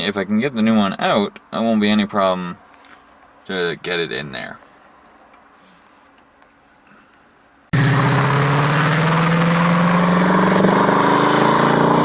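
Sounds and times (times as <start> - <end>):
loud engine running: 7.8 - 12.0.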